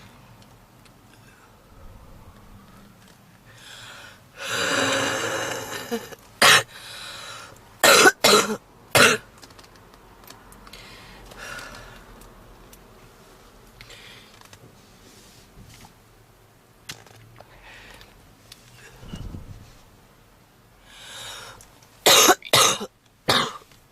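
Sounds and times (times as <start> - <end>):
noisy breath: 1.1 - 5.7, 6.7 - 7.7, 10.6 - 12.2, 13.8 - 15.6, 17.4 - 19.8, 20.8 - 21.8
woman coughing: 5.6 - 6.7, 7.8 - 9.2, 22.1 - 23.6.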